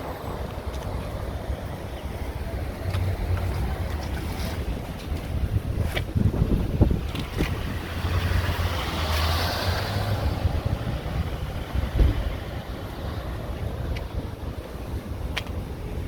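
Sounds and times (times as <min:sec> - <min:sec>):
roadside traffic noise: 0:00.0 - 0:16.0
wind buffeting microphone: 0:00.0 - 0:16.0
vehicle passing: 0:06.6 - 0:13.3.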